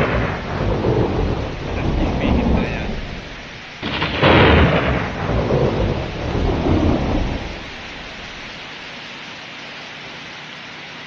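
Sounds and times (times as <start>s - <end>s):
thunderclap rumbling: 0.0s - 8.6s
heavy rain hiss: 0.0s - 11.0s.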